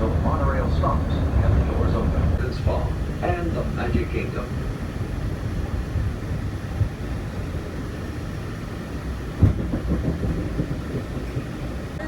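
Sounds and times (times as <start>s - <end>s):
monorail train rumbling: 0.0s - 12.0s
knock: 9.4s - 10.4s.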